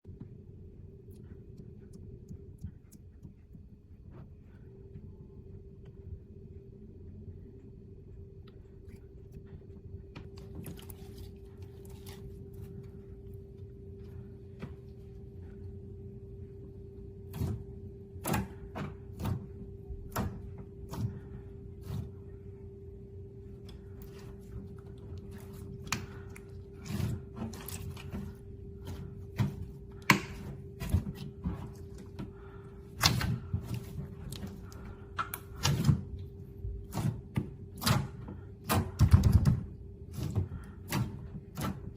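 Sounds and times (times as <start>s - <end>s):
low hum: 0.0s - 38.6s.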